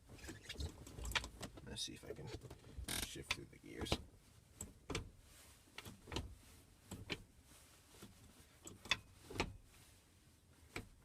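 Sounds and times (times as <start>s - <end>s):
gear shift lever clicks and clunks: 0.1s - 1.7s, 2.3s - 5.2s, 5.8s - 7.3s, 8.0s - 9.6s, 10.7s - 11.0s.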